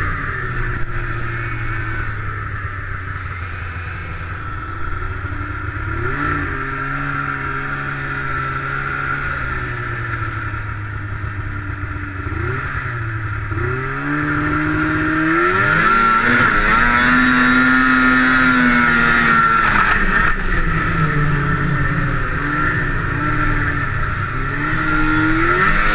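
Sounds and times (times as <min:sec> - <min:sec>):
snowmobile engine revving: 0:00.0 - 0:25.9.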